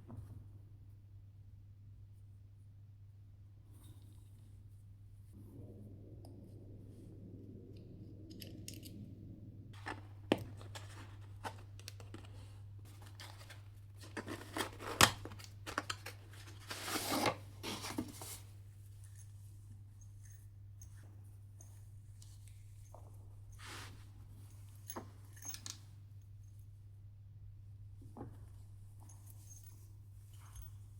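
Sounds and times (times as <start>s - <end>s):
soft rustling: 16.0s - 25.4s.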